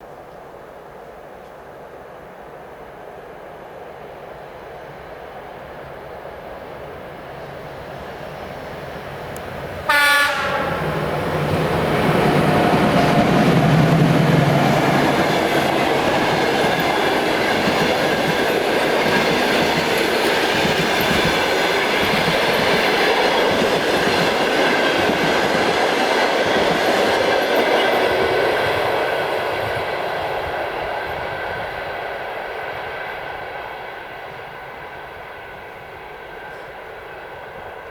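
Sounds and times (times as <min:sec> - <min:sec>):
train wheels rattling over rails: 0:07.4 - 0:37.9
locomotive horn blast: 0:09.8 - 0:11.2.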